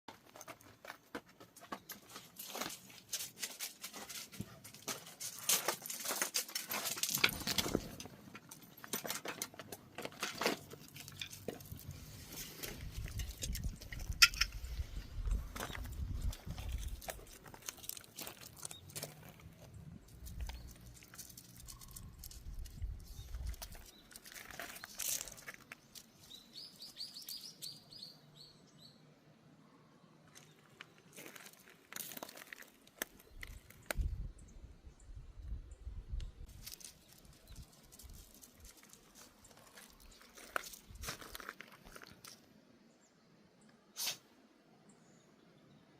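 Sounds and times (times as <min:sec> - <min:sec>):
puppy paws pattering: 0:00.2 - 0:14.3
small bird chirping: 0:19.7 - 0:29.0.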